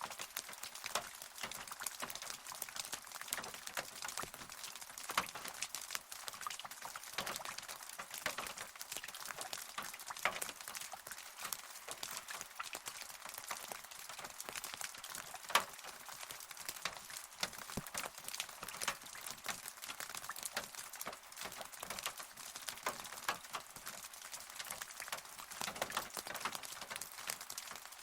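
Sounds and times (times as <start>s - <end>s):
rain hiss: 0.0s - 28.0s
drops ticking on hard surface: 11.5s - 27.8s.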